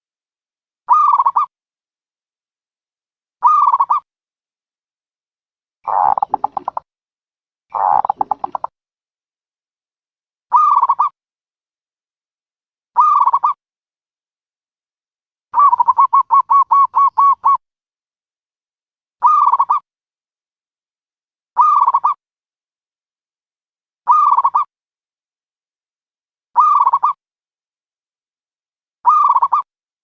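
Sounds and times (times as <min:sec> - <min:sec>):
dove cooing: 0:05.9 - 0:06.8, 0:07.8 - 0:08.7, 0:15.6 - 0:17.6.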